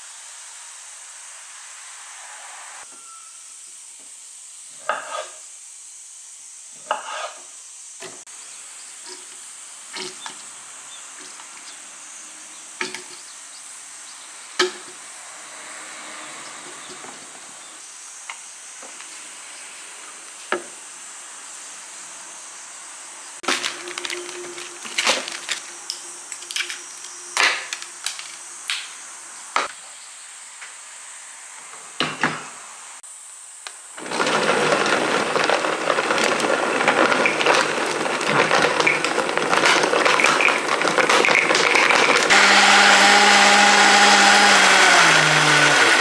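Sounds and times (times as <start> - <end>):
utensils clinking on cookware: 23.4 - 28.4, 34.0 - 43.1.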